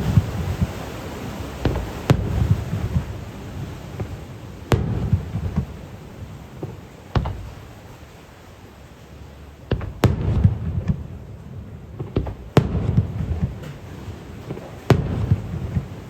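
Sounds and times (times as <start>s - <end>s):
low rumbling echo: 0.0s - 7.7s
firework shells bursting: 1.6s - 3.1s.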